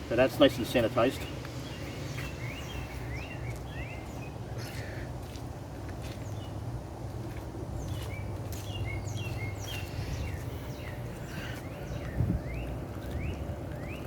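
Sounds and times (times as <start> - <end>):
birds chirping: 0.0 - 14.0
low outdoor rumble: 0.0 - 14.0.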